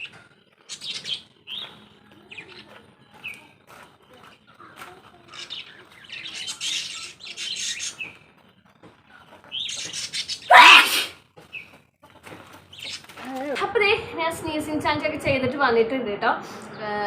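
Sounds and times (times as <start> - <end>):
person sneezing: 10.5 - 11.1.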